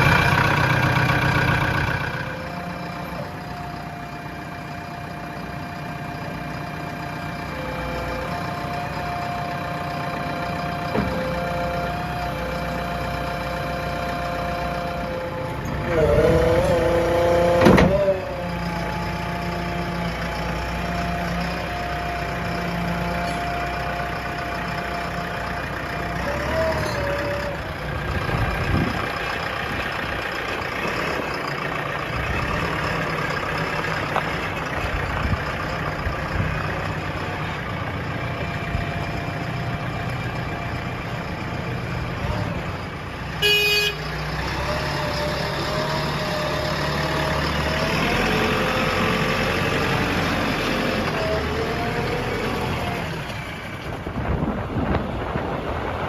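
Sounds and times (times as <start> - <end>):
diesel engines running: 0.0 - 56.0
horn toot: 43.4 - 44.1.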